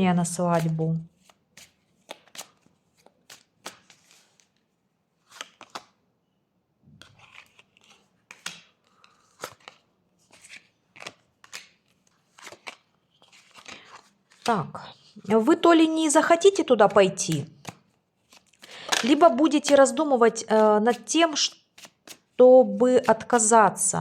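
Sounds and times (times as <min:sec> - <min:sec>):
cards shuffling and snapping: 0:00.5 - 0:04.6, 0:05.2 - 0:06.0, 0:07.0 - 0:14.5, 0:16.9 - 0:22.4.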